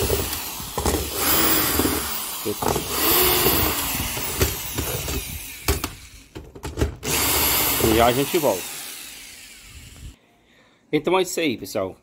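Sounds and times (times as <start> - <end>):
electric drill running: 0.0 - 6.3, 7.0 - 10.2.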